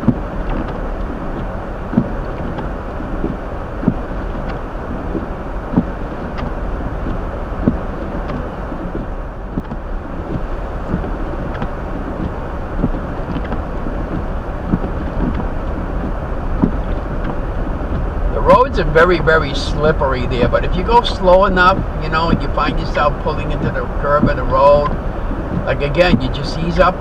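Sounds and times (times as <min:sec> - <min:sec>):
light ticks: 0:00.0 - 0:18.1
car tyres rumbling on snowy road: 0:00.0 - 0:27.0.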